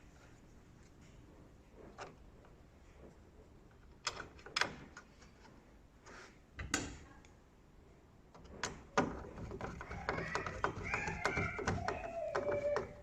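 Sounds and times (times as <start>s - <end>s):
plastic clicks and knocks: 8.3s - 13.0s.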